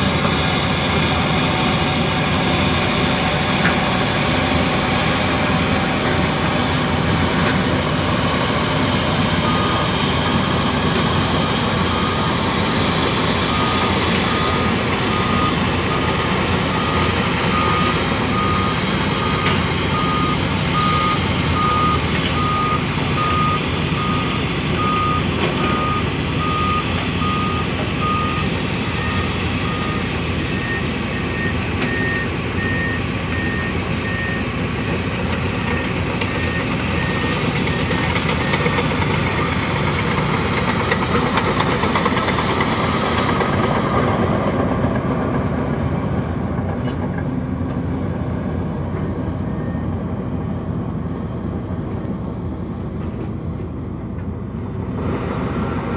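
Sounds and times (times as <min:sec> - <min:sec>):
reversing alarm beeping: 0:00.0 - 0:43.7
bulldozer diesel engine running: 0:00.0 - 0:55.9
higher-pitched reversing beep: 0:11.8 - 0:34.5.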